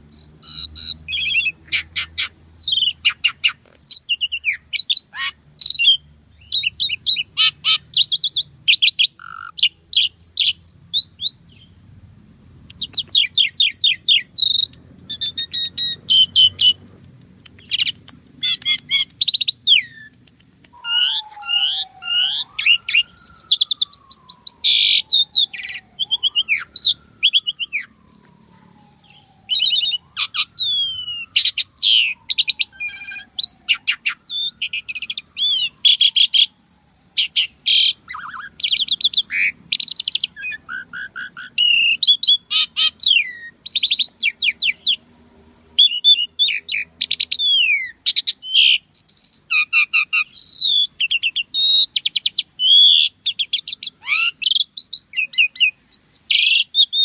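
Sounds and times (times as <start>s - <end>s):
bird singing varied song: 0.0s - 11.9s, 12.6s - 57.0s
long falling whistle: 20.8s - 33.5s.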